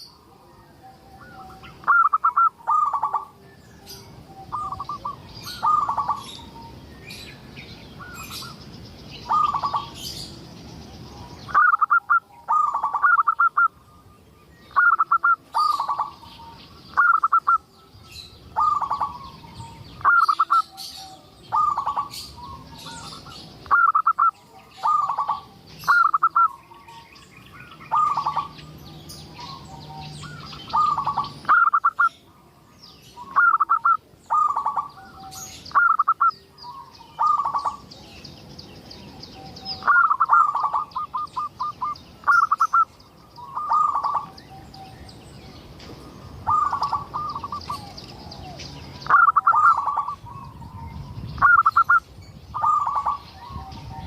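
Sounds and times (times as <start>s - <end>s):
dove cooing: 0.0s - 6.8s, 9.2s - 10.3s, 11.5s - 13.8s, 14.7s - 17.7s, 18.5s - 27.0s, 27.9s - 28.7s, 29.3s - 32.1s, 33.2s - 38.0s, 39.4s - 44.9s, 46.4s - 54.0s
high-pitched bird chirping: 0.8s - 45.6s, 46.4s - 54.0s.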